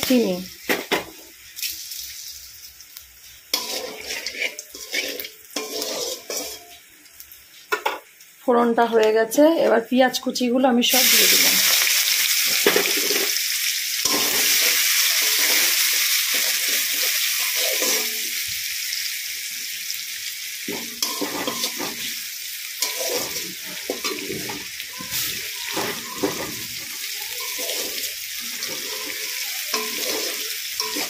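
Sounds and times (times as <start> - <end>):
onions sizzling in hot oil: 0.0 - 31.0
spatula scraping and knocking pan: 3.6 - 6.8, 20.7 - 22.1, 22.8 - 31.0.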